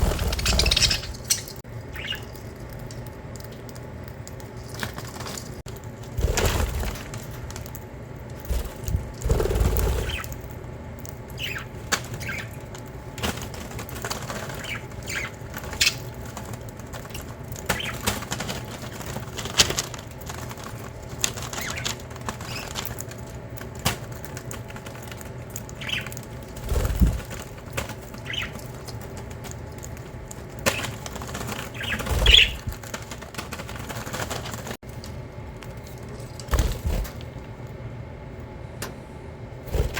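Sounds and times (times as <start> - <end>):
budgerigars fluttering wings: 0.0 - 2.4, 4.7 - 7.3, 8.4 - 10.5, 11.4 - 34.8, 36.5 - 37.2, 39.7 - 39.9
budgerigars chirping: 0.2 - 2.3, 11.4 - 12.6, 14.5 - 16.0, 28.2 - 28.6, 31.7 - 32.7.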